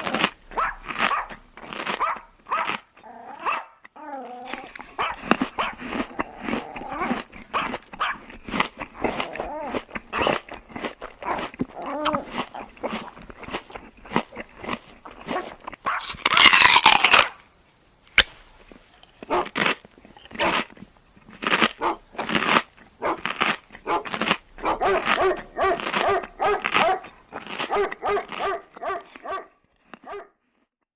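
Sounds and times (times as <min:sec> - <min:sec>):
short clicks and crunches: 0:00.0 - 0:03.0, 0:03.8 - 0:17.4, 0:18.1 - 0:30.2
dog barking and whining: 0:00.5 - 0:08.4, 0:11.2 - 0:12.7, 0:15.2 - 0:16.4, 0:19.2 - 0:19.6, 0:20.4 - 0:20.6, 0:21.8 - 0:22.3, 0:23.0 - 0:30.4.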